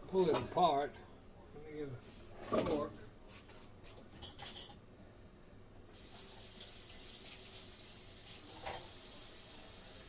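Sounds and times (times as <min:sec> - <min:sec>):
faucet water running into sink: 0:06.0 - 0:10.0.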